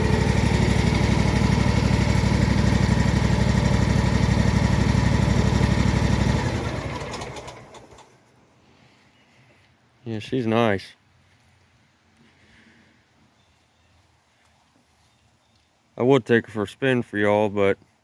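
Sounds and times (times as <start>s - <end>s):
mower engine running: 0.0s - 8.2s.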